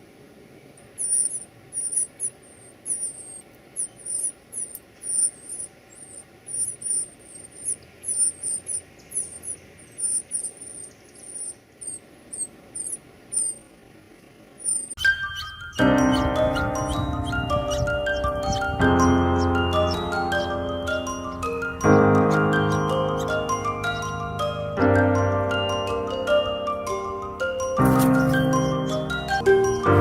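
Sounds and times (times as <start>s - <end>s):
nestling birds begging chirps: 0.3s - 30.0s
music: 15.0s - 30.0s.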